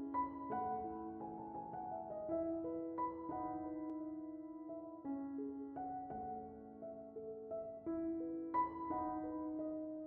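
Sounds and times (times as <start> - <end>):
slow piano-like notes: 0.0 - 10.0.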